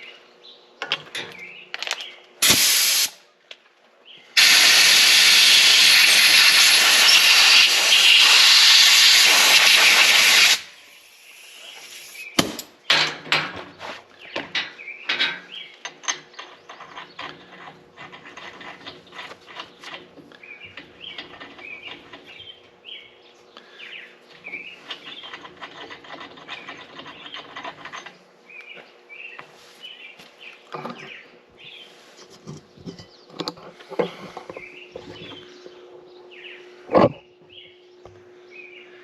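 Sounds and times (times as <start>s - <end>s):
birds chirping: 0.0s - 2.4s, 10.8s - 13.0s, 13.6s - 39.0s.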